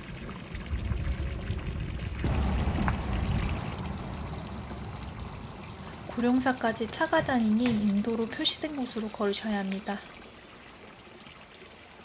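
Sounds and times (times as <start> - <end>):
stream water rushing: 2.0 - 11.6.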